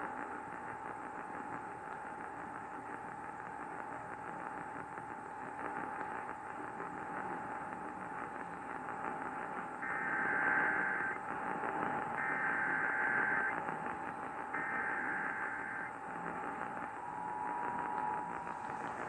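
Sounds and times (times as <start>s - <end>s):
radio static hiss: 0.2s - 19.0s
digital data tone bursts: 9.8s - 11.2s, 12.2s - 13.6s, 14.5s - 19.0s
steady whistle-like tone: 9.8s - 11.2s, 12.2s - 13.5s, 14.6s - 16.0s, 16.7s - 19.0s.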